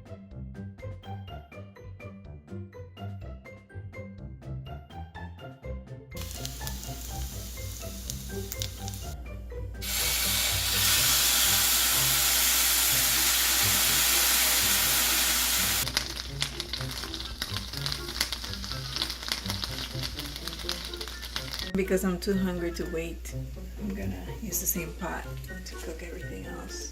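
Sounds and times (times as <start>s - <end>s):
food sizzling in a pot: 6.2s - 9.2s, 9.8s - 26.8s
popping oil spatter: 6.2s - 9.2s, 9.8s - 21.8s.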